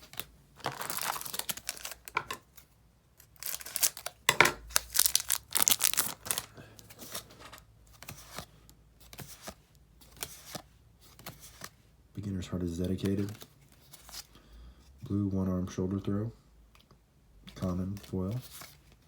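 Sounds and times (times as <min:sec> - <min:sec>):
foil wrapper crinkling and tearing: 0:00.0 - 0:02.2, 0:03.2 - 0:06.5.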